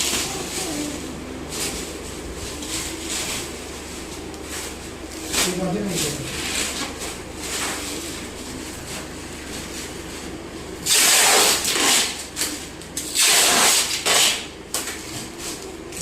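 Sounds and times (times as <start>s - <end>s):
packing material ripping: 10.8s - 15.0s.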